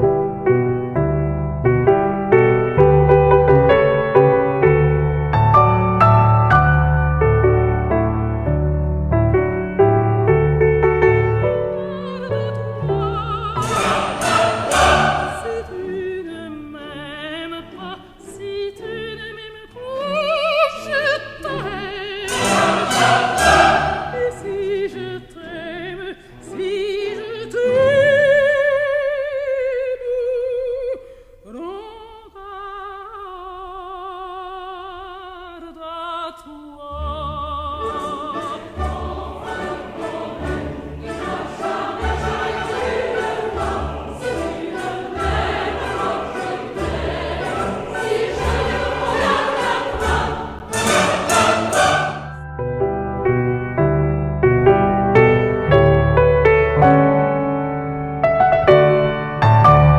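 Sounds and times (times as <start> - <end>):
orchestral accompaniment: 0.0 - 28.6, 37.2 - 59.9
operatic singing with vibrato: 11.5 - 52.4.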